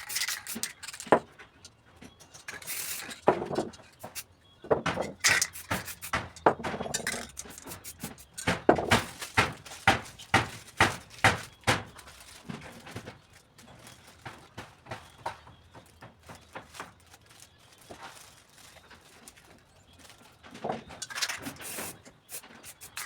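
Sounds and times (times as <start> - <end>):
spray cans and tools knocking: 0.0 - 1.3, 2.4 - 17.0, 20.5 - 23.0.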